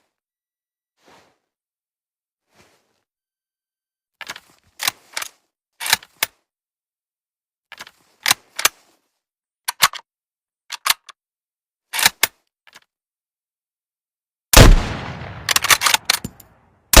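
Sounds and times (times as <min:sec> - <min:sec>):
rifle bolt clicking: 0:15.4 - 0:16.5.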